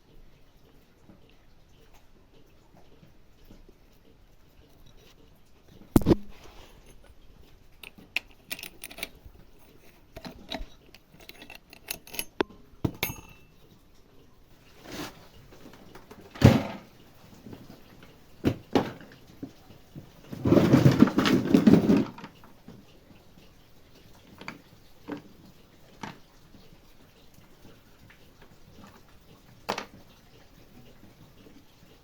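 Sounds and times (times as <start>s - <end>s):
metal tools clinking and knocking: 7.8s - 13.6s.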